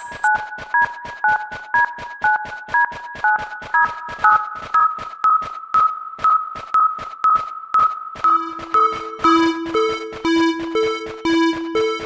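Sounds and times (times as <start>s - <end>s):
level crossing warning bell: 8.3s - 12.0s.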